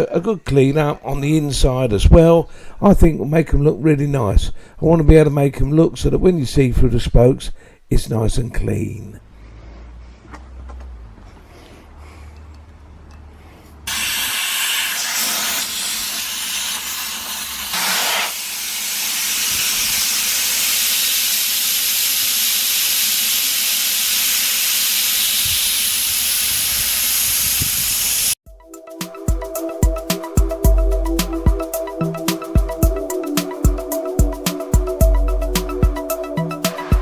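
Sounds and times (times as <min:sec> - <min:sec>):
pressure washer jet hissing: 0:13.9 - 0:28.4
music with a regular beat: 0:28.5 - 0:37.0.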